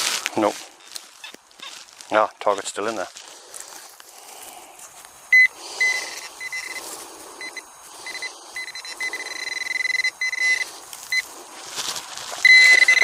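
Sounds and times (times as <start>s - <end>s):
soil rustling: 0.0s - 13.0s
metal detector beeping: 0.8s - 1.8s, 5.3s - 11.3s, 12.4s - 13.0s.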